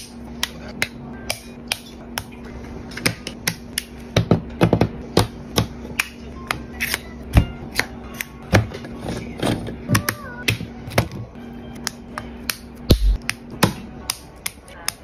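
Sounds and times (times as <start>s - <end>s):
quiet background music: 0.0s - 15.0s.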